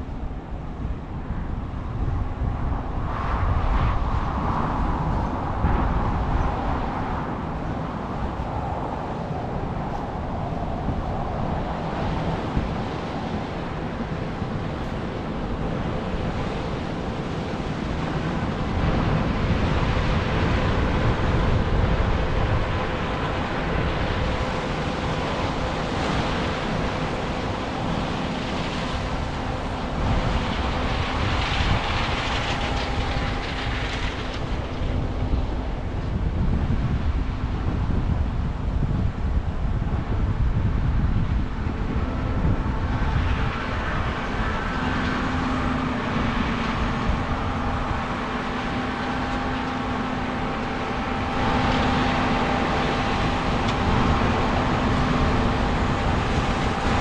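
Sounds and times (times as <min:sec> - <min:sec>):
wind noise on microphone: 0:00.0 - 0:57.0
farm machine running: 0:27.4 - 0:35.1, 0:44.0 - 0:57.0.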